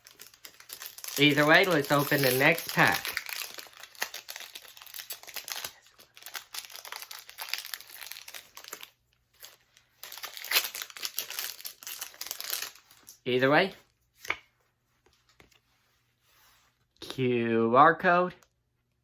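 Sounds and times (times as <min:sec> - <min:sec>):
foil wrapper crinkling: 0:00.0 - 0:13.2.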